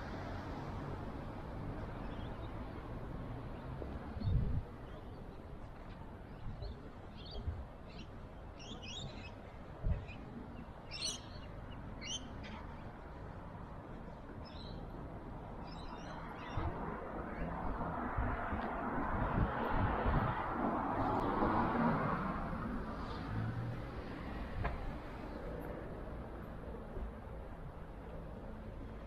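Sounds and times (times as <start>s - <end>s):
distant traffic: 0.0s - 29.0s
wind: 0.0s - 29.0s
small birds chirping: 6.6s - 9.4s, 10.0s - 12.3s.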